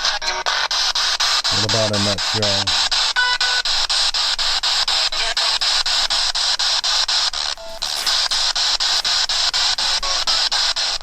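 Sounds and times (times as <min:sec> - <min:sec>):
chopped radio static hiss: 0:00.0 - 0:11.0
radio tone: 0:01.5 - 0:02.9.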